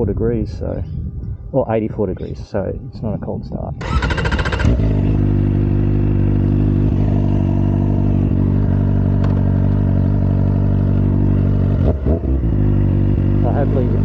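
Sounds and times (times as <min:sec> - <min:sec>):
motorcycle engine idling: 0:03.8 - 0:14.0.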